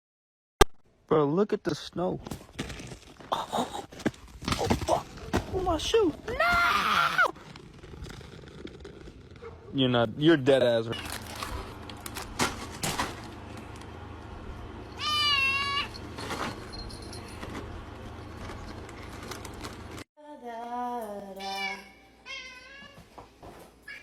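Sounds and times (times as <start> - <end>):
steady background noise: 10.2 - 20.0
cat meowing: 15.0 - 15.9, 21.4 - 23.0.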